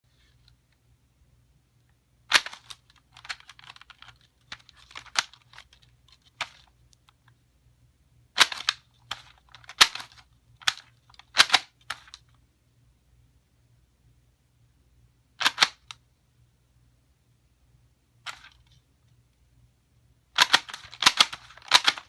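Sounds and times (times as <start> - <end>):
labelling gun clicking: 20.4 - 22.0.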